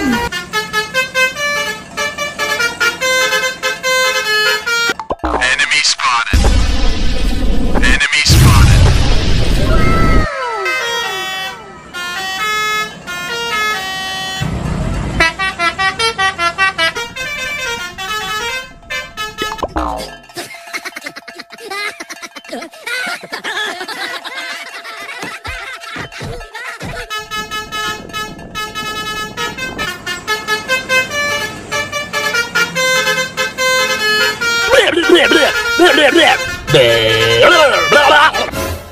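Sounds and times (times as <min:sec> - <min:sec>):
multi-tone bus horn melody: 0:00.0 - 0:05.0, 0:10.3 - 0:20.4, 0:26.5 - 0:38.9.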